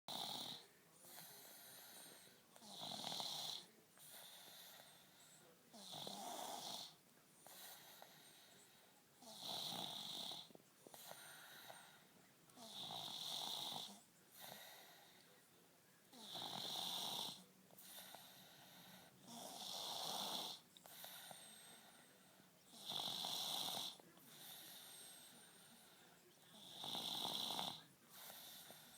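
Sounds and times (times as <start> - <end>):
quiet breathing: 0.1 - 28.9
person snoring: 12.6 - 14.0, 16.2 - 17.4, 22.7 - 24.9, 26.6 - 28.9.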